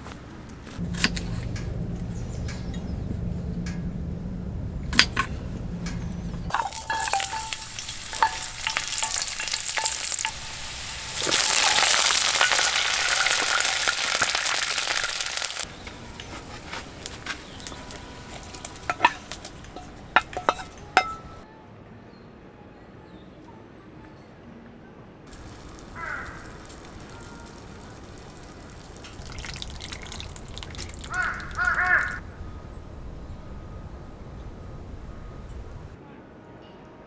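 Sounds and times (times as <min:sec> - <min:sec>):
utensils clicking and clinking: 0:04.9 - 0:21.4
food sizzling in a hot pan: 0:06.5 - 0:21.4, 0:25.3 - 0:35.9.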